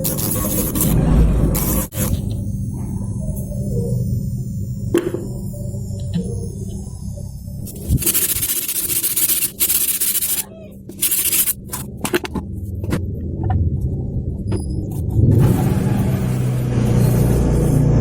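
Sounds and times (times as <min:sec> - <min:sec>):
hand sanding strokes: 0:07.7 - 0:10.4, 0:11.0 - 0:11.6.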